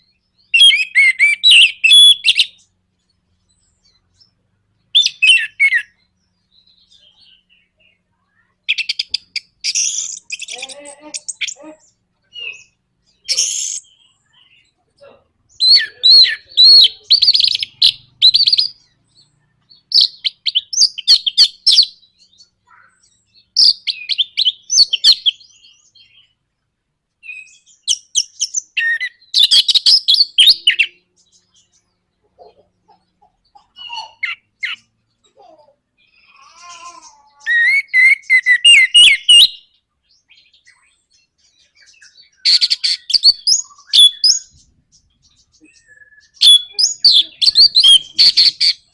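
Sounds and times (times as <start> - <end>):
thrush singing rapid chatter: 15.1 - 21.7, 42.5 - 48.9.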